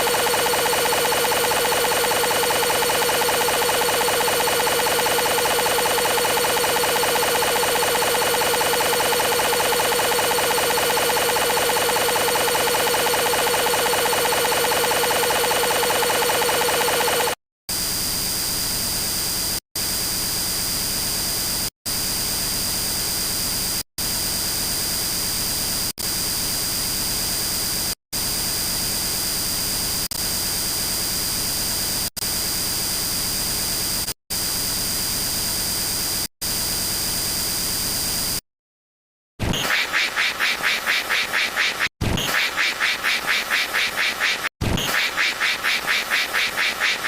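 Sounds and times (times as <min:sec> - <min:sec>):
pulsing buzz: 0:00.0 - 0:18.7.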